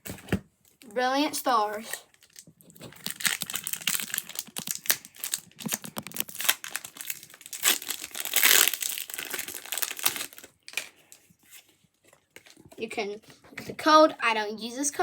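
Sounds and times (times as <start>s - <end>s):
foil wrapper crinkling: 2.1s - 11.3s.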